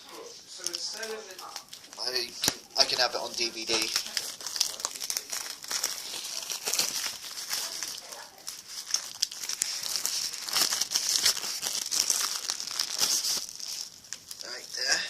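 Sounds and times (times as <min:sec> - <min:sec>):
plastic wrap crinkling: 0:00.0 - 0:15.0.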